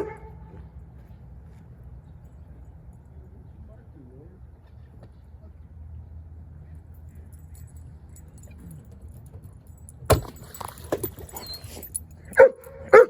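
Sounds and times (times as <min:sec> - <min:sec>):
dog whining: 0:11.2 - 0:11.9
dog barking loudly: 0:12.4 - 0:13.0.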